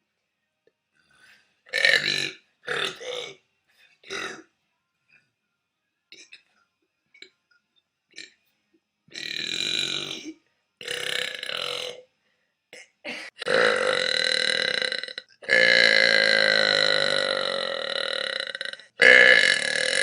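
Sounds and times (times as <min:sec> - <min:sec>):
person burping: 0:01.7 - 0:03.4, 0:04.1 - 0:04.5, 0:09.1 - 0:12.0, 0:12.8 - 0:20.0.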